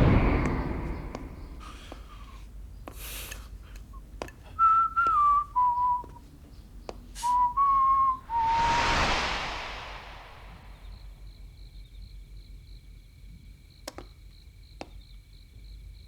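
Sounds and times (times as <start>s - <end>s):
person whistling a tune: 4.6s - 6.2s, 7.2s - 8.5s.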